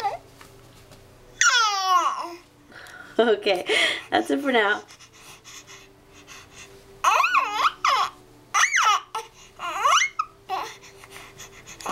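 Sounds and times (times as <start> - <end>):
baby squealing: 1.4 - 2.3, 7.0 - 10.7.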